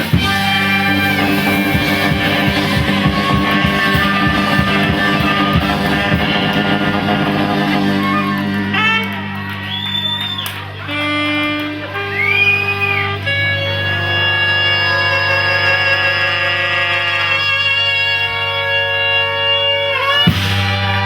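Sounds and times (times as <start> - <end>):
drums: 0.0 - 13.9, 19.4 - 21.0
held electric guitar notes: 0.0 - 21.0
sliding high guitar notes: 0.0 - 21.0.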